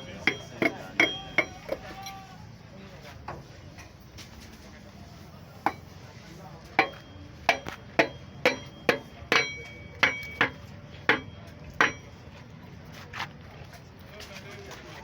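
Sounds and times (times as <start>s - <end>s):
hammer blows on metal: 0.0s - 2.2s, 6.8s - 12.1s.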